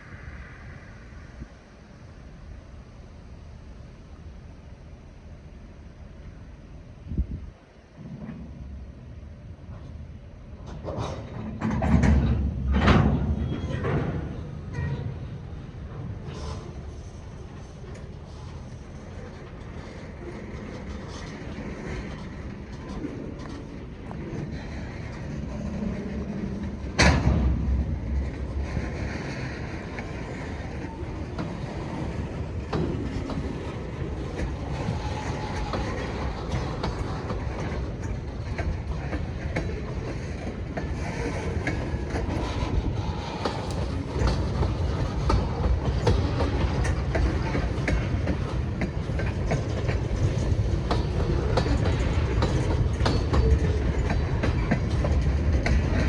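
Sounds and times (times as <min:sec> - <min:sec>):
freight cars rolling on track: 0:00.0 - 0:56.0
wheels clicking over rail joints: 0:08.0 - 0:56.0.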